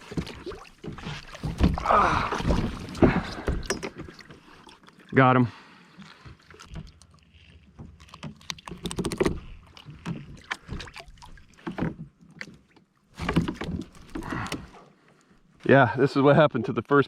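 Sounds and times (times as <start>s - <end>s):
knocks and scrapes on kayak: 0.0s - 4.8s, 6.1s - 14.9s.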